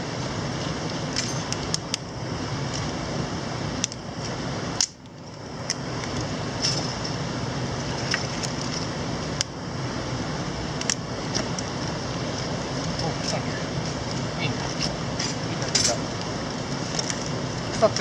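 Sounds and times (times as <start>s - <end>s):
mountain stream rushing: 5.4s - 18.0s.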